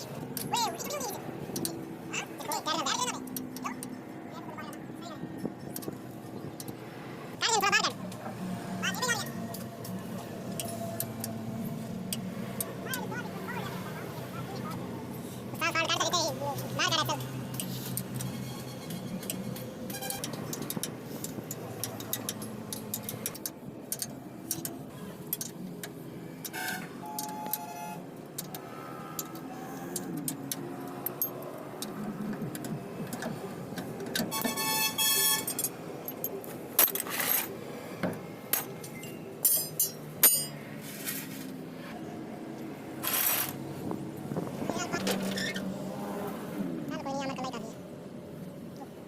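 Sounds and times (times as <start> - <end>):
street traffic: 0.0 - 49.0
vehicle horn: 34.3 - 35.6
metallic clinks of tools: 38.6 - 40.6.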